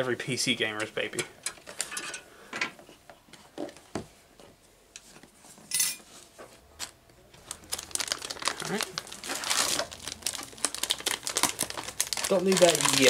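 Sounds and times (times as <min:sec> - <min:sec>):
packing material rustling: 0:07.4 - 0:13.0.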